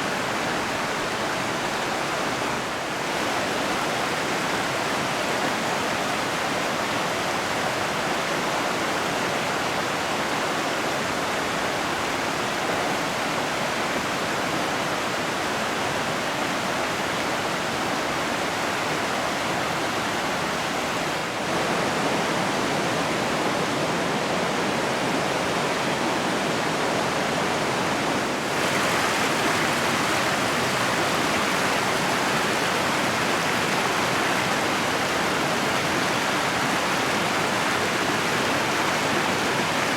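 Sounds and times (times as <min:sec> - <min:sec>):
river rushing over rocks: 0:00.0 - 0:39.9.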